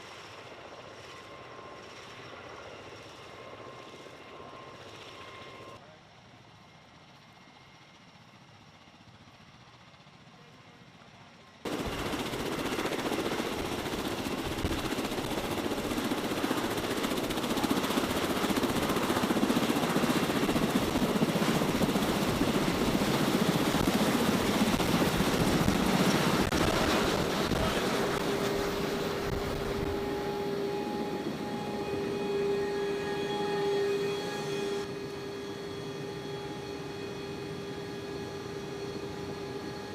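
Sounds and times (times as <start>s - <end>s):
rotor and engine noise: 11.7s - 36.8s
steady whine: 11.7s - 39.9s.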